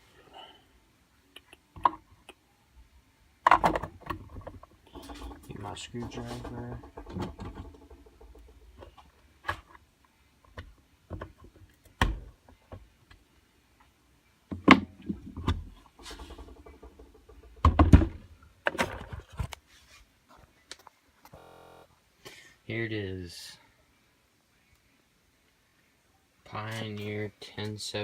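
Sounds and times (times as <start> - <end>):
tools knocking and clunking: 3.5 - 9.7, 14.5 - 18.2.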